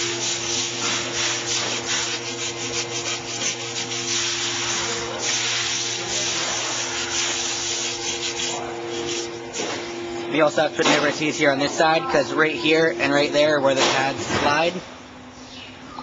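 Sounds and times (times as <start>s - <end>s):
wire brush scraping metal: 0.0s - 9.8s
low steady hum: 0.0s - 16.0s.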